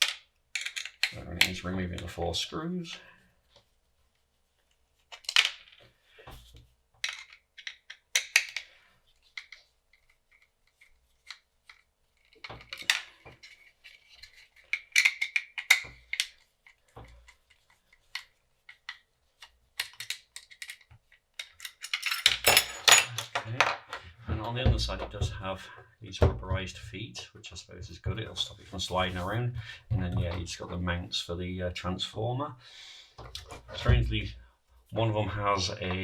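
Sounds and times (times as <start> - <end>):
small metallic clinks: 21.6 - 23.4.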